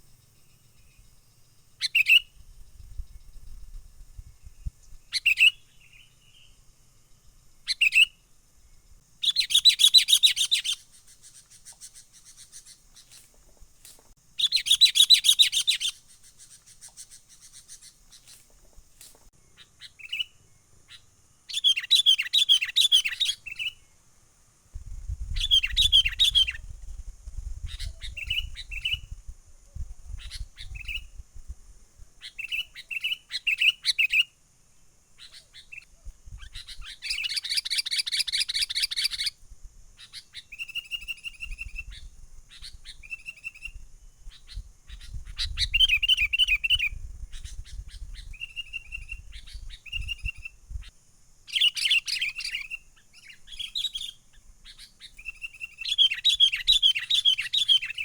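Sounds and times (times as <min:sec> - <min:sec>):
bird chattering song: 0:01.8 - 0:03.5, 0:04.5 - 0:06.6, 0:07.7 - 0:08.2, 0:09.2 - 0:13.4, 0:14.4 - 0:18.5, 0:19.4 - 0:23.9, 0:25.3 - 0:26.7, 0:27.6 - 0:29.1, 0:30.1 - 0:31.2, 0:32.2 - 0:34.4, 0:35.1 - 0:39.4, 0:40.0 - 0:50.9, 0:51.5 - 0:58.0
bird whistled phrases: 0:05.1 - 0:06.0, 0:09.2 - 0:10.8, 0:14.4 - 0:16.0, 0:21.5 - 0:23.8, 0:25.4 - 0:26.6, 0:51.5 - 0:58.0.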